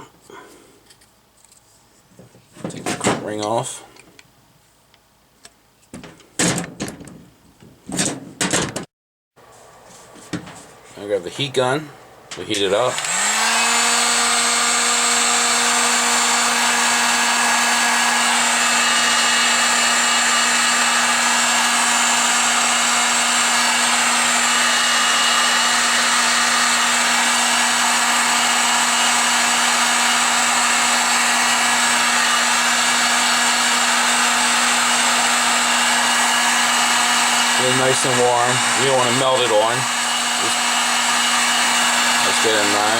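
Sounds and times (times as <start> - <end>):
heat gun motor hum: 12.2 - 42.9.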